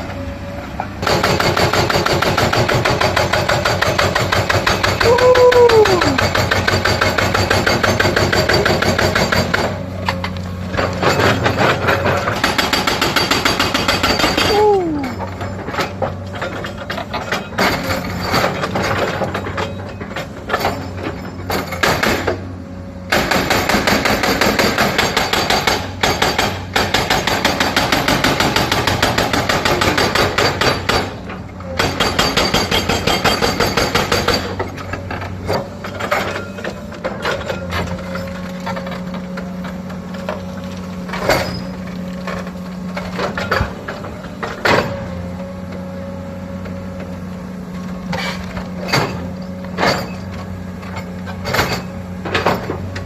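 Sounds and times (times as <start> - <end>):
diesel engine humming: 0.0 - 2.9, 3.5 - 6.6, 13.5 - 20.9
hydraulic breaker hammering: 1.0 - 19.8, 23.1 - 38.8.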